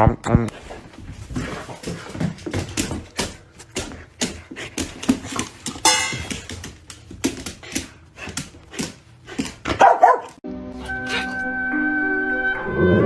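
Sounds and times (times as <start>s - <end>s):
dog barking: 9.7s - 10.4s.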